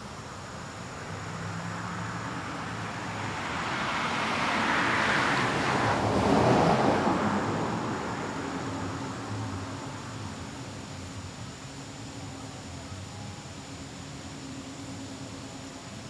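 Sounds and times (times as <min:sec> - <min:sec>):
vehicle passing by: 0:01.0 - 0:11.2.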